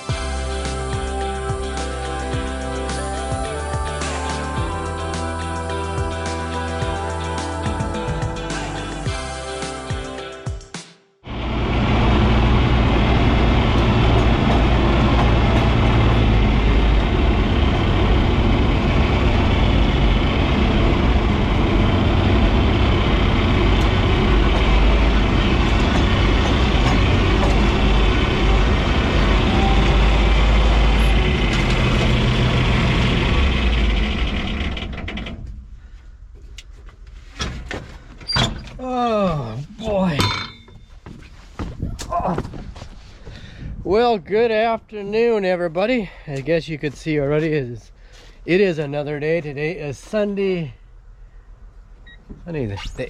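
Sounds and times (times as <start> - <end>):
engine and machinery rumbling: 11.3 - 53.0.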